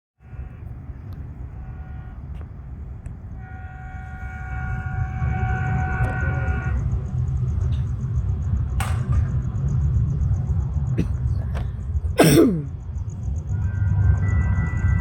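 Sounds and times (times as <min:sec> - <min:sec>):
train horn blast: 0:00.2 - 0:07.2, 0:13.5 - 0:15.0
low rumble of train: 0:00.2 - 0:15.0
faint short horn-like tone: 0:03.3 - 0:06.8.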